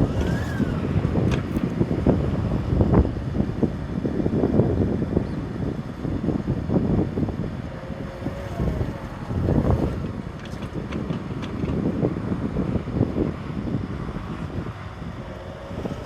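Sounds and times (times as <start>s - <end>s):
engine running: 0.0s - 16.0s
wind rumble on microphone: 0.0s - 16.0s.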